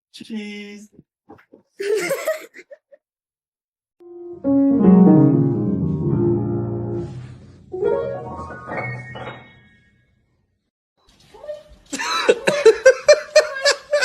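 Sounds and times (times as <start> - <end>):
piano chords ringing: 4.0 - 10.4.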